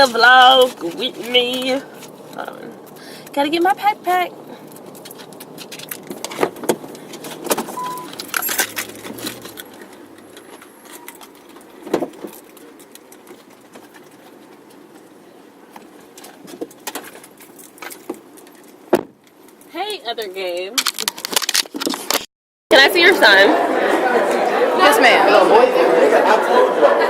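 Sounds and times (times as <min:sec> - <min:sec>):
keys jangling: 0:07.2 - 0:11.5.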